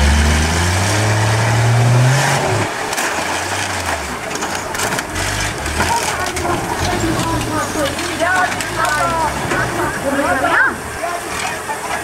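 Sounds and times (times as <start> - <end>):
vehicle engine revving: 0.0 - 10.4.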